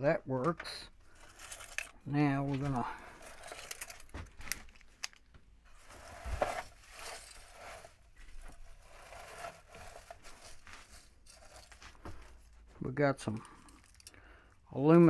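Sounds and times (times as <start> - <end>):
rustling of material handled: 1.0 - 14.1
small clicks of parts: 3.5 - 5.4, 13.2 - 14.6.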